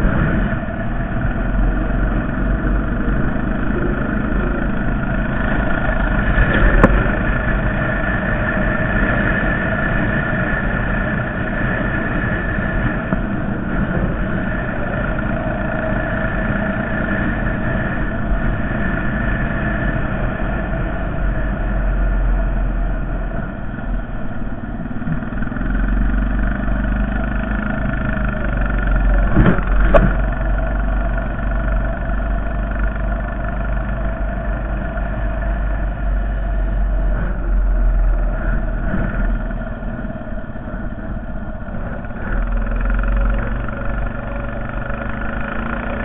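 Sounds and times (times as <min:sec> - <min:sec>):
atv engine running: 0:00.0 - 0:46.0.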